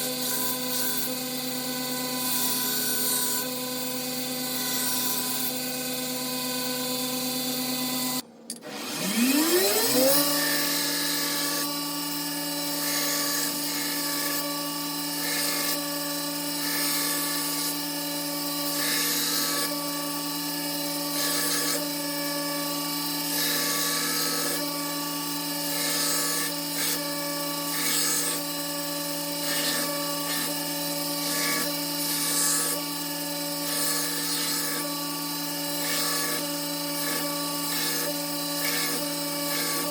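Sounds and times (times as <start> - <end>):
belt grinder motor whine: 0.0 - 39.9
knife blade grinding on belt: 27.6 - 28.8.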